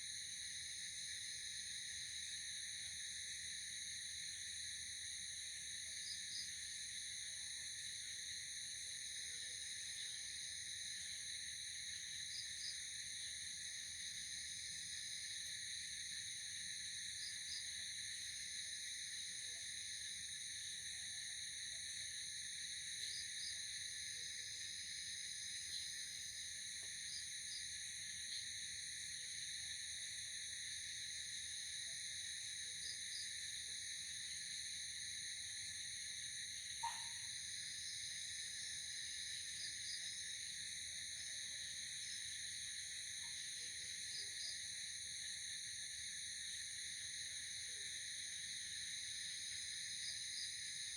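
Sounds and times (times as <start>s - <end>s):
crickets trilling: 34.6s - 50.9s.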